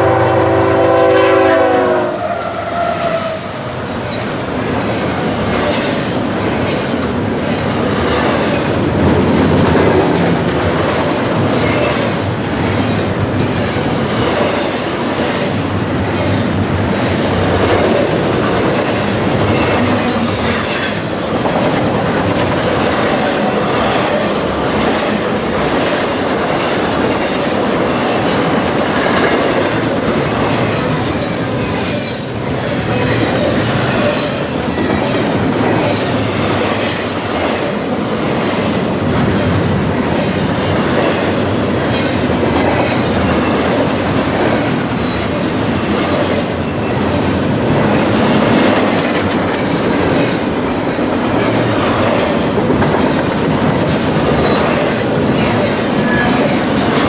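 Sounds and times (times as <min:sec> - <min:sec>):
train wheels on rails: 0:00.0 - 0:57.0
rail joint clicks: 0:02.3 - 0:57.0
high wheel squeals: 0:30.3 - 0:37.2.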